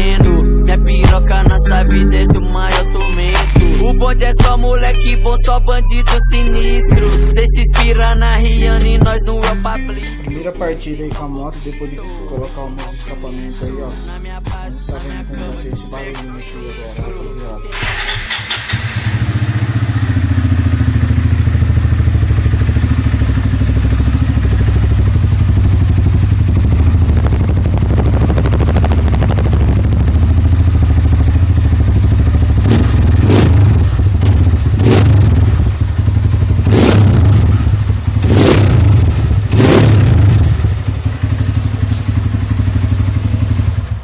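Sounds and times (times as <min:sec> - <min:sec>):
motorcycle engine idling: 0:00.0 - 0:44.0
sharp exhaust bursts: 0:17.7 - 0:43.8.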